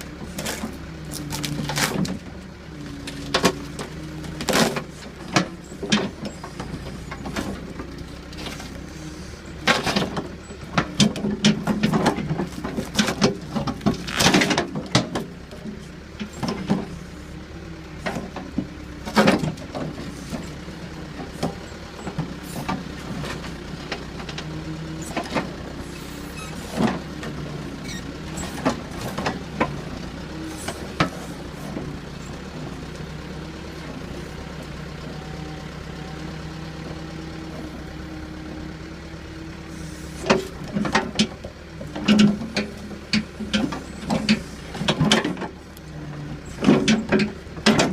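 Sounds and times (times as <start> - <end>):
backhoe engine running: 0.0 - 47.9.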